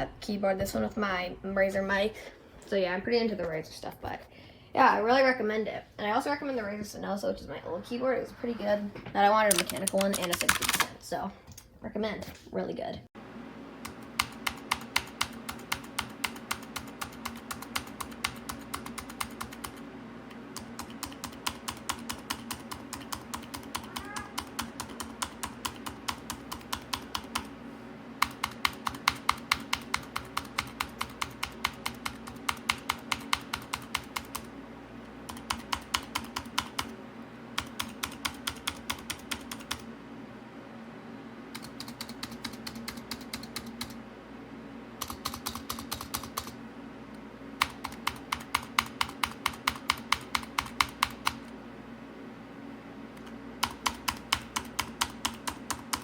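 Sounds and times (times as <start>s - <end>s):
clicky keyboard typing: 9.4s - 11.0s, 20.6s - 27.5s, 37.6s - 39.8s, 41.6s - 44.0s, 45.0s - 46.6s.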